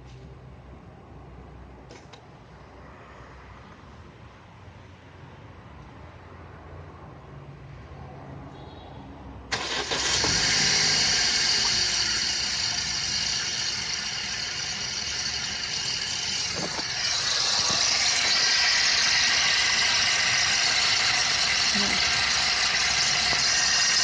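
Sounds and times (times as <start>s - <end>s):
car engine running: 9.5s - 24.0s.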